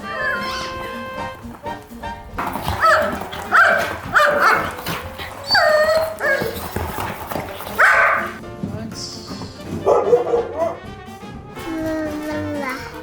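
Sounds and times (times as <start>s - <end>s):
dog barking: 2.6s - 6.8s, 7.7s - 8.4s, 9.8s - 10.8s.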